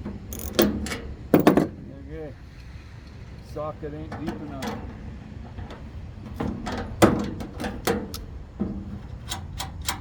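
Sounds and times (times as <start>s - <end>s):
metal tools clanking: 0.3s - 1.7s.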